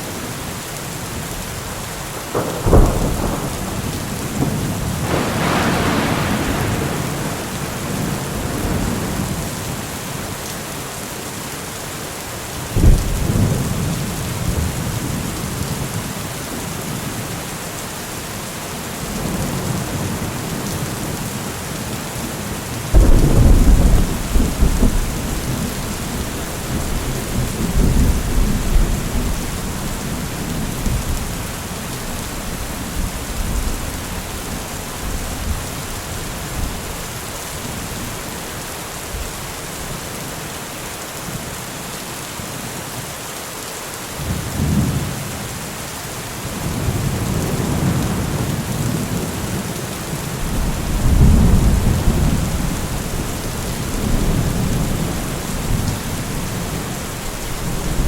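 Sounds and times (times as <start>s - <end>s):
heavy rain falling: 0.0s - 58.0s
thunder cracking and rumbling: 2.2s - 9.8s, 12.8s - 16.1s, 22.9s - 37.0s, 46.6s - 58.0s.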